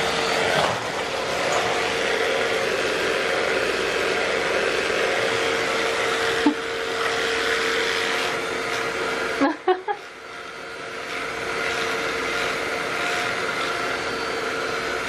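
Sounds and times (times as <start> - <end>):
vacuum cleaner running: 0.0 - 15.0.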